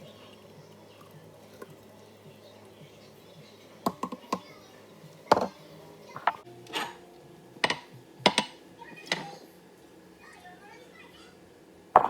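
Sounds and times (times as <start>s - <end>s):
kitchenware knocking and clinking: 5.3s - 5.6s, 6.2s - 6.4s
kitchenware scrape: 6.1s - 7.0s.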